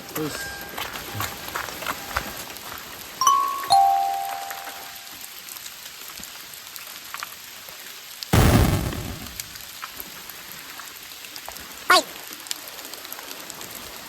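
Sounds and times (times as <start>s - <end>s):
steady rain: 0.0s - 14.0s
loud burst of deep noise: 8.4s - 9.6s.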